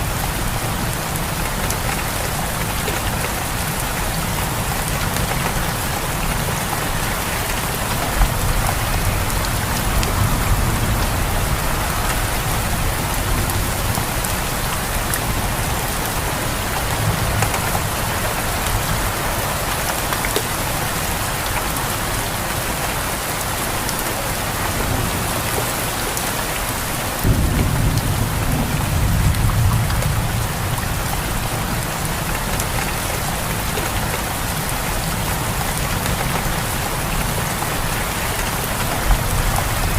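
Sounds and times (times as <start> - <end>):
heavy rain pouring: 0.0 - 39.9
thunder rumbling: 5.7 - 19.0, 27.2 - 32.2.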